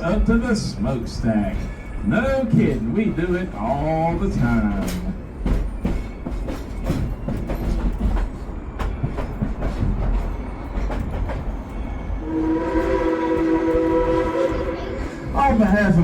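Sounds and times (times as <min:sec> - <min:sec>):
wheels clicking on rail joints: 0:00.0 - 0:12.0
steam train rumbling: 0:00.0 - 0:16.0
steam whistle chord: 0:12.2 - 0:15.2.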